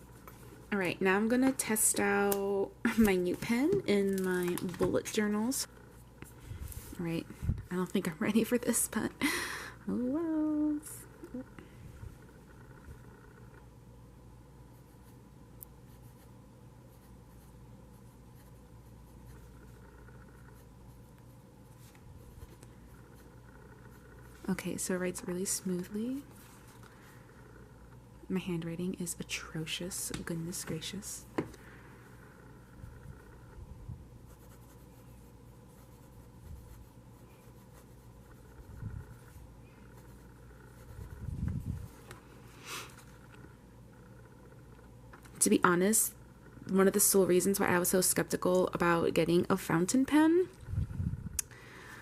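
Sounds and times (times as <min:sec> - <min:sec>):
pen nib scratching paper: 0:16.9 - 0:24.6, 0:34.3 - 0:42.0.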